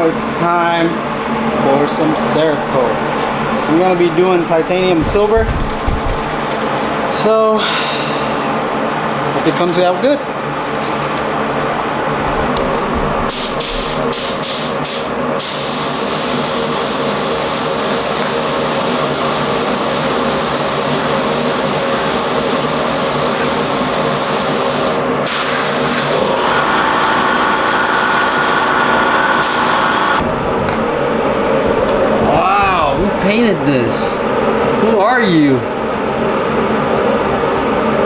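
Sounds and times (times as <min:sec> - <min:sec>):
air spray gun hissing: 0:13.3 - 0:30.2.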